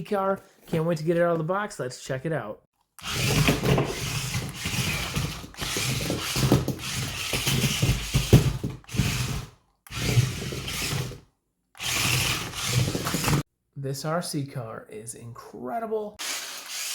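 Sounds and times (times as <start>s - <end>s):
toy car motors whirring: 3.0s - 11.2s, 11.8s - 13.4s, 16.2s - 16.9s.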